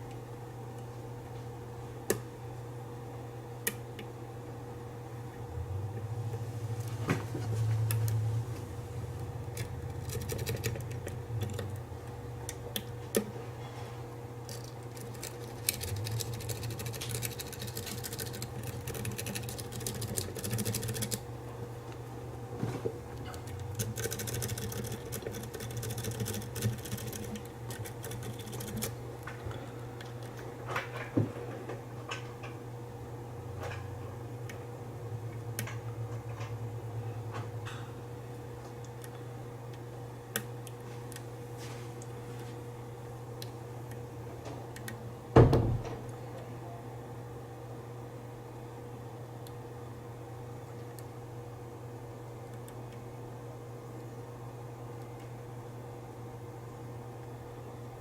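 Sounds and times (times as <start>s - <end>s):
steady low hum: 0.0s - 58.0s
rapid fine scratching: 14.5s - 21.2s.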